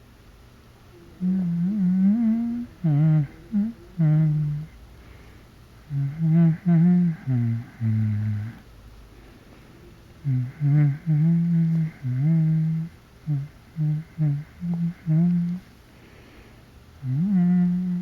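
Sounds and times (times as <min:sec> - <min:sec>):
person humming: 0:00.9 - 0:04.8, 0:05.8 - 0:08.6, 0:10.2 - 0:15.7, 0:17.0 - 0:18.0.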